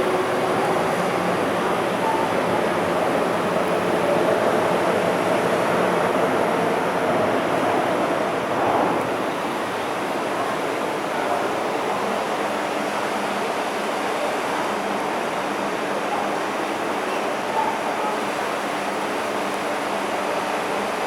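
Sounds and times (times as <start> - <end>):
train wheels rumbling on rail: 0.0 - 11.3.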